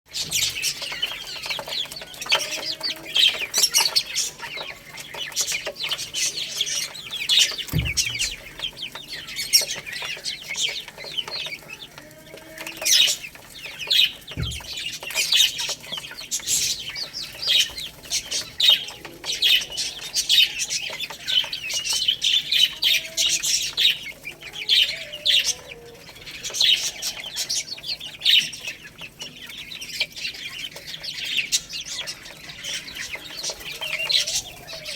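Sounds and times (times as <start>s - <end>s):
baby chicks peeping: 0.1s - 34.9s
dull low thump: 7.7s - 8.4s.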